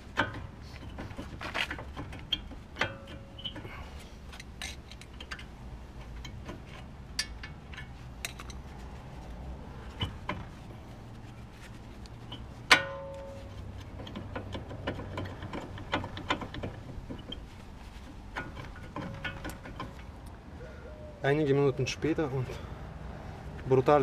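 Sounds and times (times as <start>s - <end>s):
metallic tool clicks and knocks: 6.2s - 8.6s.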